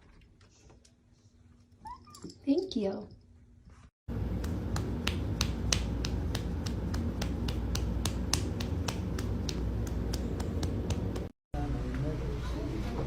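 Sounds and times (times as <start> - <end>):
steady low hum: 4.1 - 13.0.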